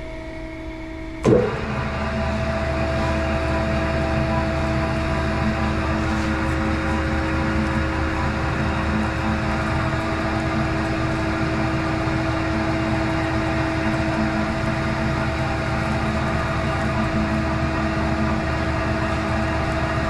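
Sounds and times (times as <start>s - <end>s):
band saw running: 0.7s - 20.0s.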